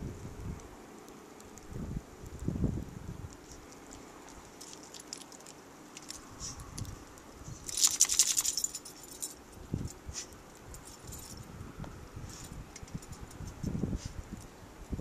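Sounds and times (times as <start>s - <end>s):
dog collar tags jingling: 7.6s - 10.0s, 10.7s - 11.5s.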